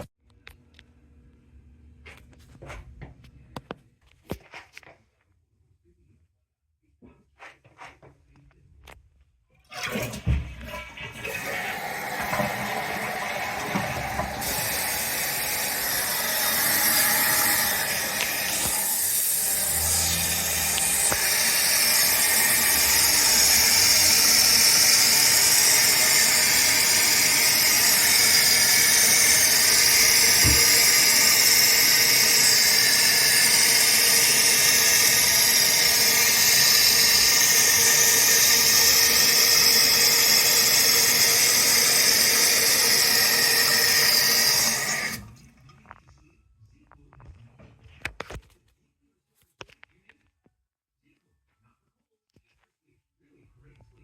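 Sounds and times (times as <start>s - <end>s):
toilet tank refilling hiss: 9.7s - 45.4s.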